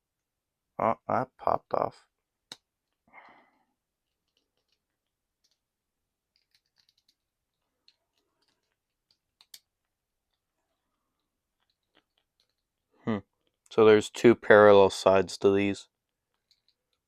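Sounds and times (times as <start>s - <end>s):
small plastic parts clicking: 4.0s - 12.8s, 16.0s - 17.0s.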